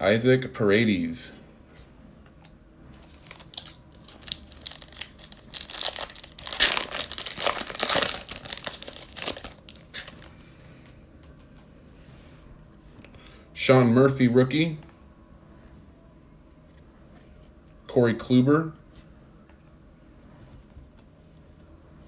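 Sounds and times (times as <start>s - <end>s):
foil wrapper crinkling: 3.1s - 10.4s.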